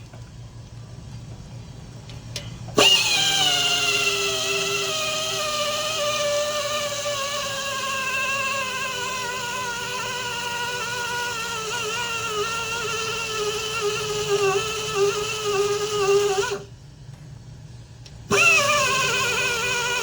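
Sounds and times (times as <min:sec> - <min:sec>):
pneumatic tire buffer whine: 0:02.7 - 0:16.7, 0:18.3 - 0:20.0.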